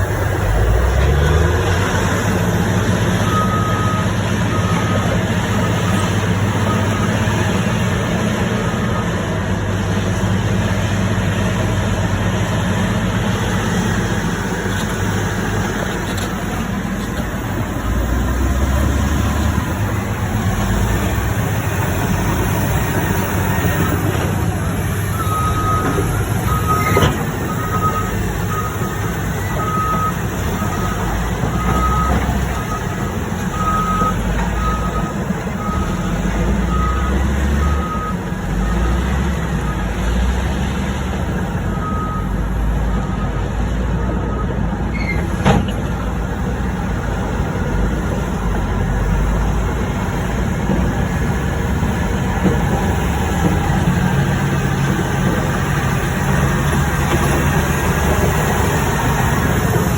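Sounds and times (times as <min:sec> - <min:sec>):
heavy diesel machinery rumbling: 0:00.0 - 0:59.9
reversing alarm beeping: 0:02.0 - 0:09.3, 0:22.1 - 0:39.0, 0:41.6 - 0:44.6.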